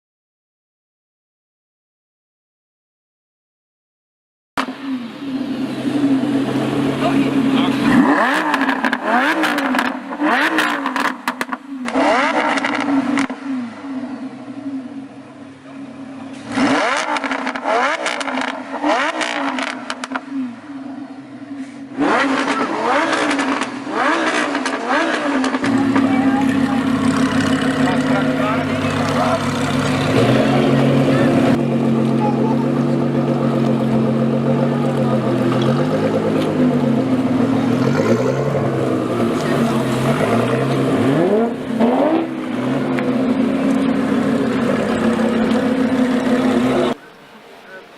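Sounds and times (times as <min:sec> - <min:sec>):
car engine idling: 0:04.6 - 0:16.5, 0:17.2 - 0:47.9
sports car engine revving: 0:04.6 - 0:47.0
exhaust crackles and pops: 0:22.4 - 0:38.3, 0:42.4 - 0:47.0.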